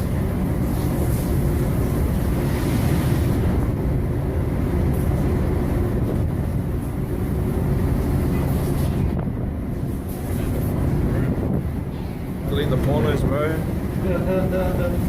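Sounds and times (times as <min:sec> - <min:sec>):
boat engine low rumble: 0:00.0 - 0:15.0
wind buffeting microphone: 0:00.0 - 0:15.0.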